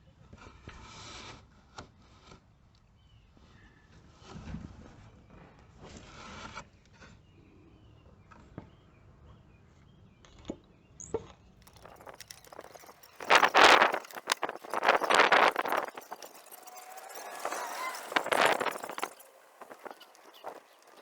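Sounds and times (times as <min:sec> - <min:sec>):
hand tools clicking and knocking: 0:11.7 - 0:21.0
scraping rub: 0:11.7 - 0:21.0
tools clattering: 0:11.7 - 0:21.0.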